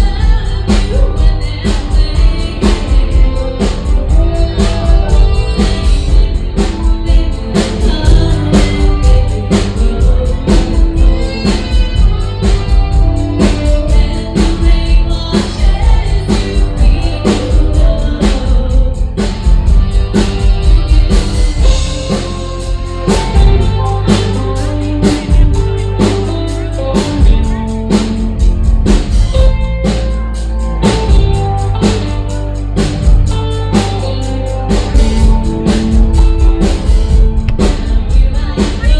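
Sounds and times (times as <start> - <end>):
woman singing: 0.0 - 28.3, 28.9 - 38.9
country band playing: 0.0 - 38.9.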